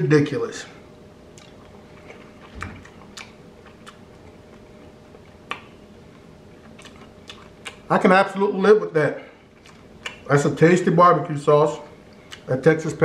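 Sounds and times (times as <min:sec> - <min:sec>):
person chewing crispy chicken: 0:01.3 - 0:07.9.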